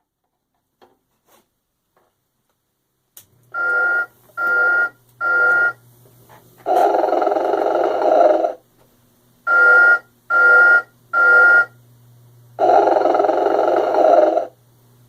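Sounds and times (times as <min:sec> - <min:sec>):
buzzy electronic snore: 0:06.6 - 0:08.6, 0:12.6 - 0:14.6.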